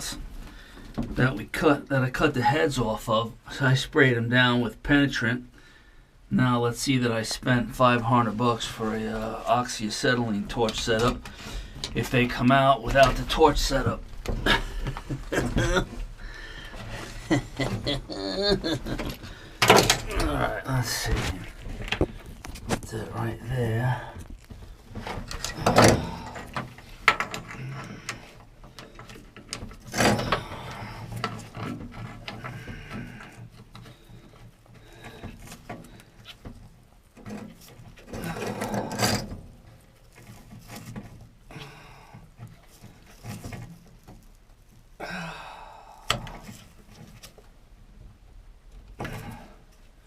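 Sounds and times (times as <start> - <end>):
metal clanks and scraping: 24.3 - 41.4.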